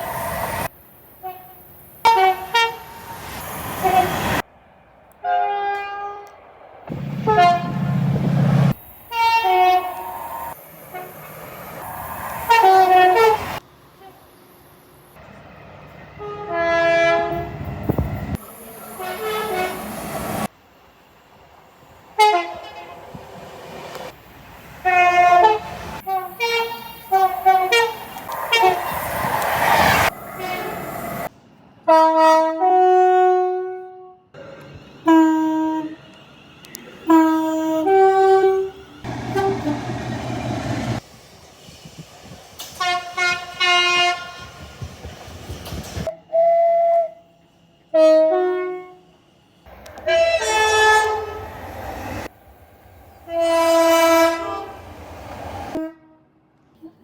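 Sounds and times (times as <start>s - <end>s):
running train noise: 0.0s - 57.0s
train horn blasts: 1.2s - 3.0s, 5.2s - 8.2s, 9.1s - 10.2s, 12.4s - 14.2s, 16.2s - 17.6s, 18.6s - 19.9s, 22.2s - 23.1s, 24.8s - 29.0s, 30.0s - 30.9s, 31.8s - 34.4s, 35.0s - 36.0s, 37.1s - 40.0s, 42.8s - 44.6s, 46.1s - 49.2s, 49.9s - 51.6s, 53.2s - 54.9s, 55.7s - 57.0s.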